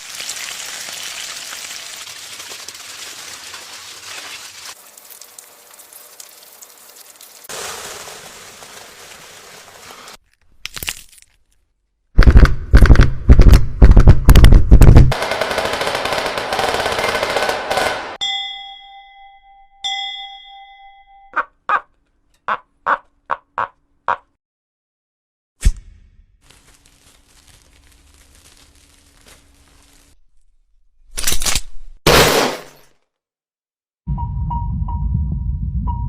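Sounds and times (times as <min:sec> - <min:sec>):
crackling noise: 0:04.0 - 0:10.2, 0:26.4 - 0:30.2
rapid volley of sharp bangs: 0:12.2 - 0:18.2.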